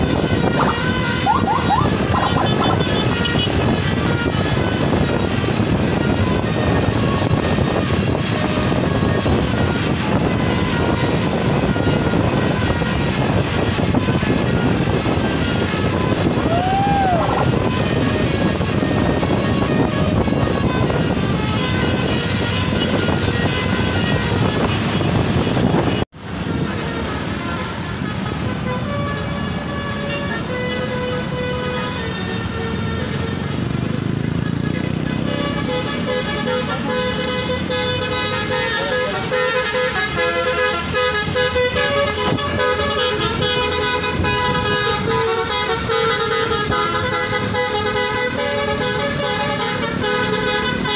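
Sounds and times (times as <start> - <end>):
multi-tone bus horn tune: 0.0 - 50.9
vehicle engine and road rumble: 0.0 - 50.9.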